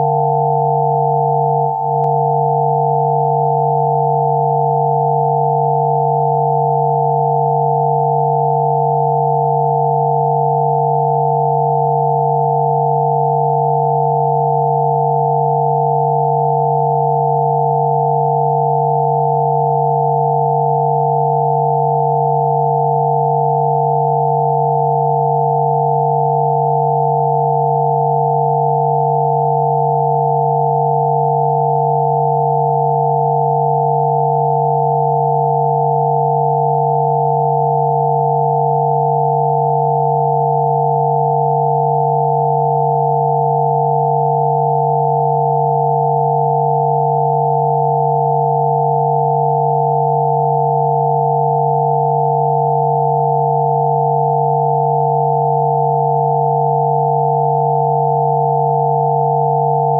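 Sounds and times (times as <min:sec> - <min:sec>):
steady sine tones: 0:00.0 - 0:59.9.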